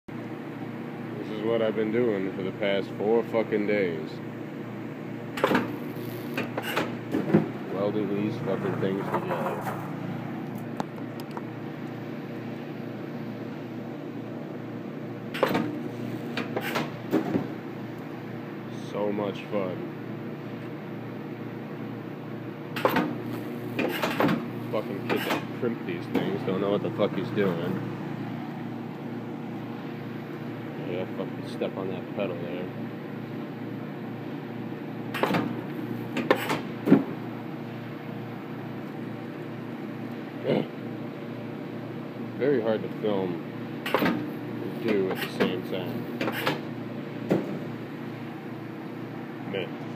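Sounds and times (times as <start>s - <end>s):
low machine hum: 0.1s - 49.9s
factory machinery drone: 7.3s - 14.4s.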